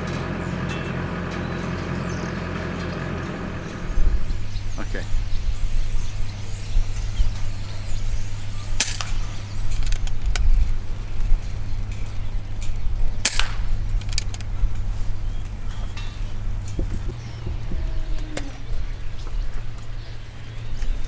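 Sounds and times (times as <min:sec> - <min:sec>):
faint clicks: 0:06.0 - 0:21.0
air rifle shots: 0:07.5 - 0:10.7, 0:13.0 - 0:14.9.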